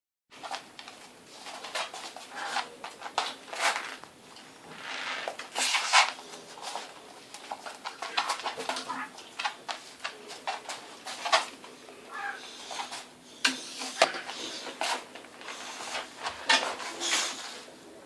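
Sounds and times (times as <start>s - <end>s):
scrabbling and tapping: 5.2s - 15.4s
short animal calls: 12.1s - 12.5s.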